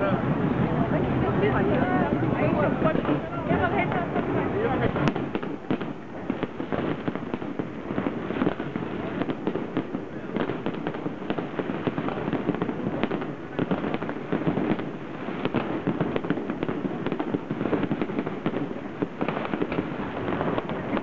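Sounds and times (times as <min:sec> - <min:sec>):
low rumble: 0:00.0 - 0:06.2
fireworks bangs and crackles: 0:00.0 - 0:21.0.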